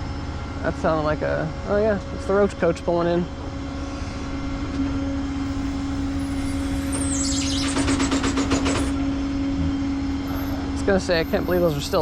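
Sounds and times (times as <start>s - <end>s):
vehicle engine humming: 2.6s - 12.0s.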